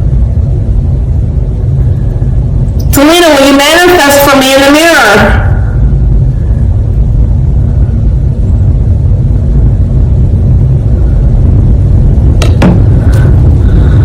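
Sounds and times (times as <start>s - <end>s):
loud low rumble: 0.0s - 14.0s.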